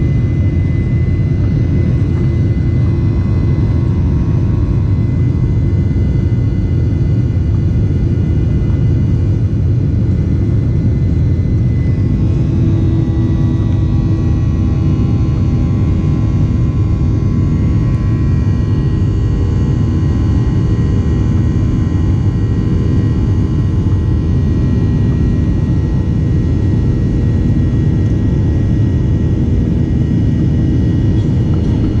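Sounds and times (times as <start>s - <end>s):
engine and airflow rumble: 0.0s - 32.0s.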